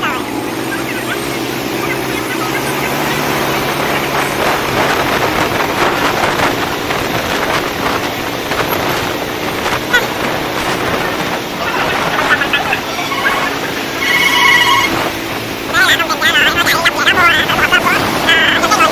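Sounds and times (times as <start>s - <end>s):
motorbike engines running: 0.0s - 18.9s
chatter of many voices: 9.8s - 14.0s.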